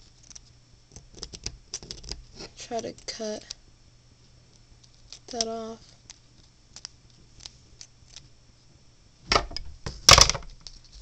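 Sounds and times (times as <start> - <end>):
scissors cutting plastic: 0.0 - 2.4, 4.8 - 8.3.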